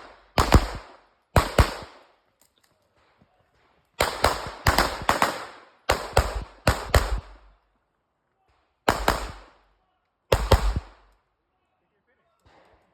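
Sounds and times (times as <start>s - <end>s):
pistol shots: 0.0s - 2.0s, 4.0s - 7.6s, 8.9s - 9.6s, 10.3s - 11.2s.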